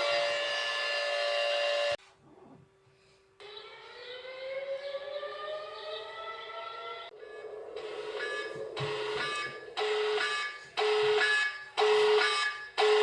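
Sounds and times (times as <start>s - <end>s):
multi-note siren tone: 0.0s - 2.0s, 3.4s - 13.0s
siren winding up: 3.4s - 13.0s.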